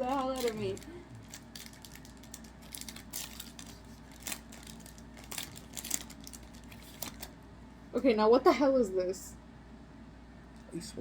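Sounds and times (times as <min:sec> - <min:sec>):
card wrapper crinkling: 0:00.0 - 0:07.4.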